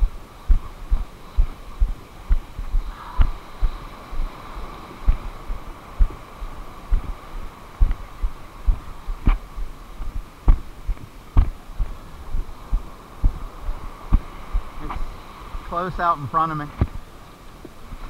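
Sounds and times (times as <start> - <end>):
dull low thumps: 0.0 - 4.3, 5.0 - 6.2, 6.9 - 14.7
faint steady hum: 0.0 - 18.0.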